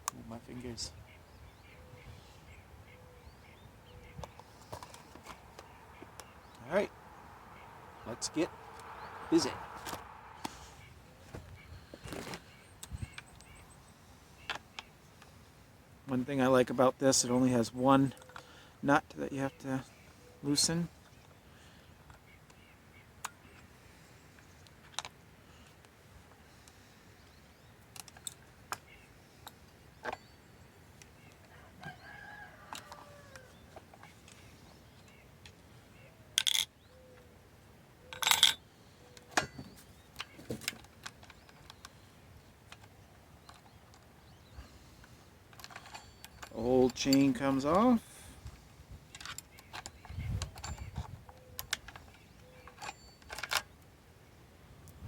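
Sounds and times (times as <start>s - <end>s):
clicks of chainsaw parts handled: 36.4s - 36.7s, 38.1s - 38.6s, 45.5s - 47.8s.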